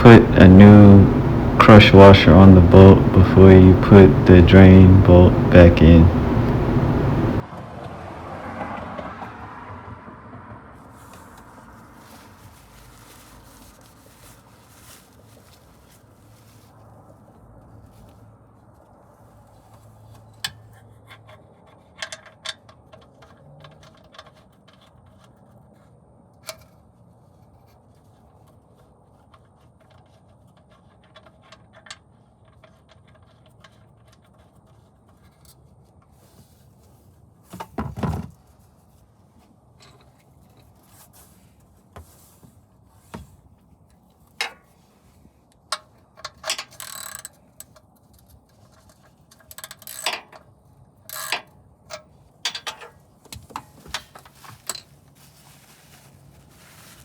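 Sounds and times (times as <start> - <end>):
hand tools clicking and knocking: 51.1 - 54.9.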